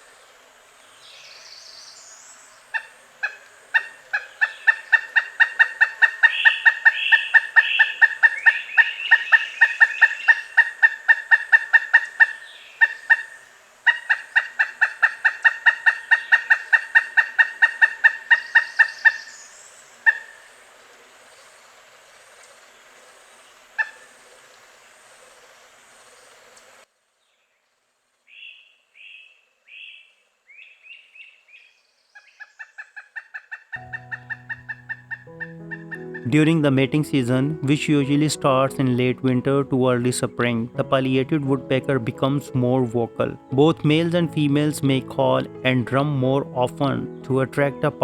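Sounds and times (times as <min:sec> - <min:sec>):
faint rising bird call: 0:01.0 - 0:21.5, 0:28.3 - 0:36.3
woodpecker calling kuk-kuk-kuk: 0:01.1 - 0:21.0, 0:23.7 - 0:24.5, 0:32.2 - 0:48.0.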